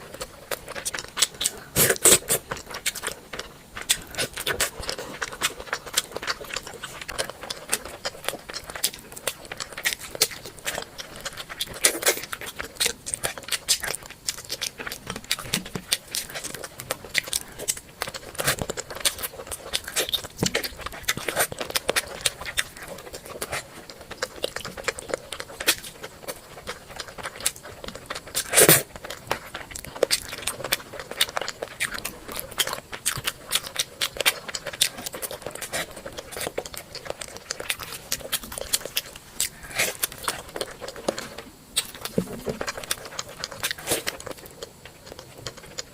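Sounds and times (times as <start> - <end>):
chewing and lip smacks: 0.0 - 45.9
bite or slurp: 28.4 - 28.9.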